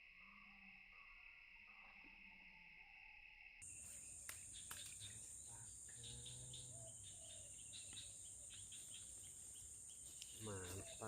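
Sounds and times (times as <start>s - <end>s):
faint insect chirps: 0.0s - 11.0s
insects shrilling: 3.6s - 11.0s.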